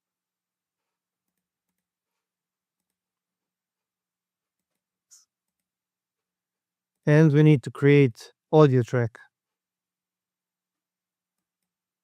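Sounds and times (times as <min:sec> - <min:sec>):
computer mouse and keyboard clicks: 0:01.2 - 0:03.1, 0:04.5 - 0:05.8.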